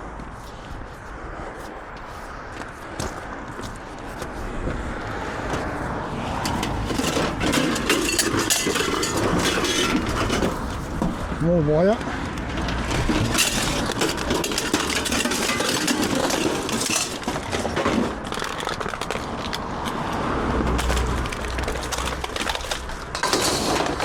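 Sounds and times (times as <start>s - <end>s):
scrap metal clinking and rattling: 5.5s - 11.4s, 12.4s - 24.0s.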